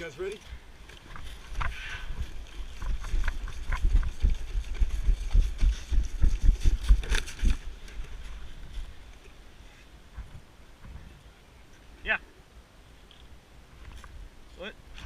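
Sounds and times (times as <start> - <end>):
running footsteps thudding: 2.1 - 7.7.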